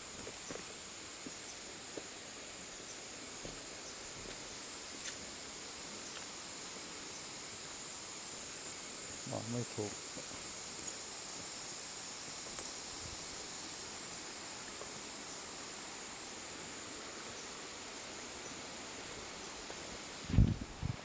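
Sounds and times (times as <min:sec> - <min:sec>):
high insect drone: 0:00.0 - 0:21.0
low rumble on microphone: 0:20.3 - 0:21.0.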